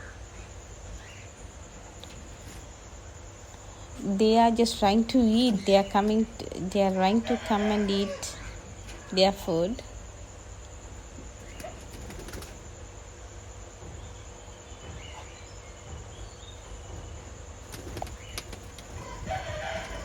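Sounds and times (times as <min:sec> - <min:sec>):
steady background hiss: 0:00.0 - 0:20.0
parakeets fluttering and shuffling: 0:11.4 - 0:12.8, 0:17.6 - 0:20.0.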